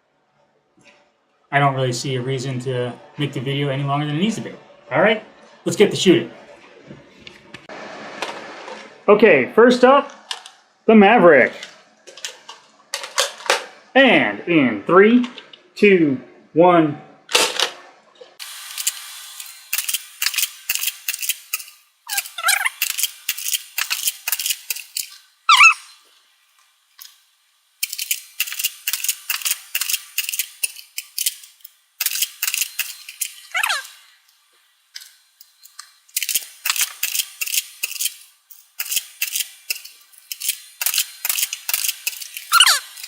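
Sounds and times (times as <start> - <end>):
toy blaster clicks and rattles: 18.4 - 26.0, 27.0 - 34.1, 35.0 - 43.0
short falling squeaks: 25.5 - 26.0, 33.5 - 33.9, 42.5 - 42.9.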